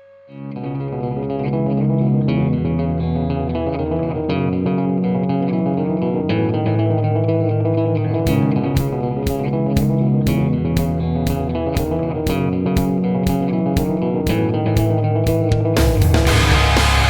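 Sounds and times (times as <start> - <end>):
electric guitar and bass music: 0.3 - 17.0.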